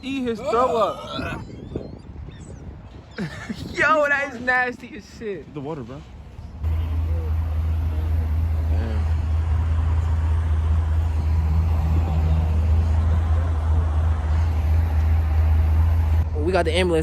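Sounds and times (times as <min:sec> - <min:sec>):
vehicle engine idling: 0:06.5 - 0:16.9.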